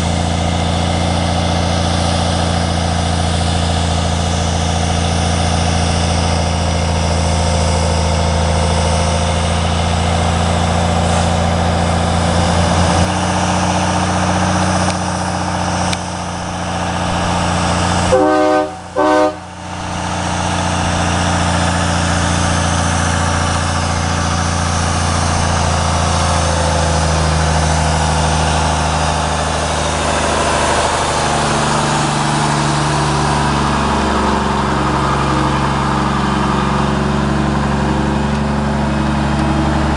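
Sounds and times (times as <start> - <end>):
diesel truck engine under load: 0.0 - 39.9
truck horn blasts: 16.7 - 22.0.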